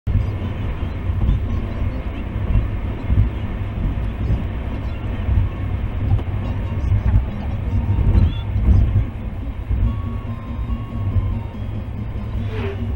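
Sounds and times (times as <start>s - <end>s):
car road and engine rumble: 0.0s - 12.9s.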